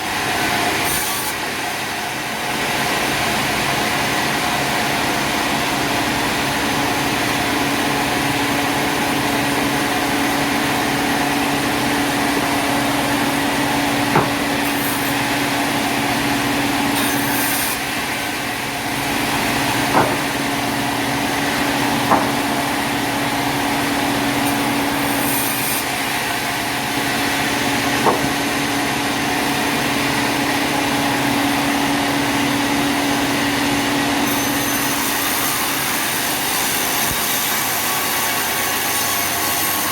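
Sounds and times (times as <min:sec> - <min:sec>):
sawmill machinery humming: 0:00.0 - 0:39.9
sharp knocks: 0:12.3 - 0:15.6, 0:18.9 - 0:23.6, 0:27.0 - 0:28.6.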